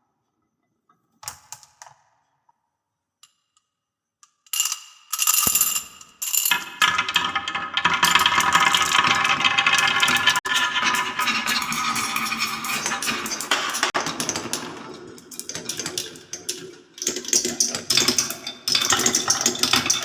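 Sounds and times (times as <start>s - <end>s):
balls clattering down marble run: 4.6s - 20.0s.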